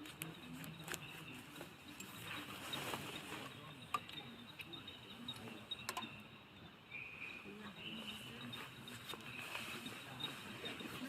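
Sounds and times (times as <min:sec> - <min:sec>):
crickets chirring: 0:00.2 - 0:11.0.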